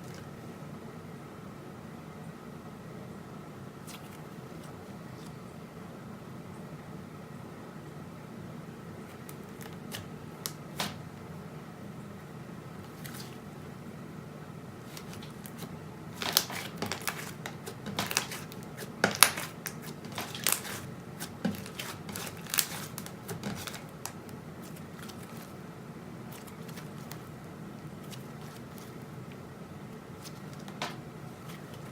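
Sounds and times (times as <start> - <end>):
steady low hum: 0.0 - 31.9
sticky slime pops and crackles: 16.2 - 25.4.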